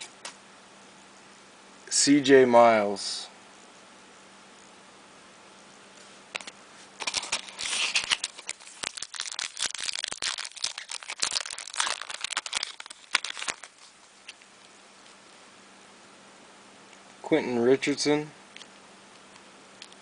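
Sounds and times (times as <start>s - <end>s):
wrapper crinkling and tearing: 6.4s - 14.4s.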